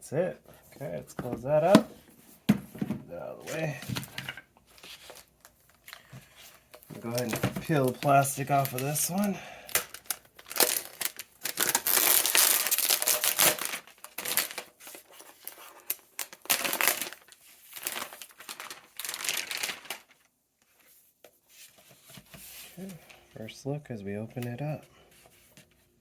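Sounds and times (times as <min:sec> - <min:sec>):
plastic wrap peeling and crinkling: 0:04.7 - 0:20.3.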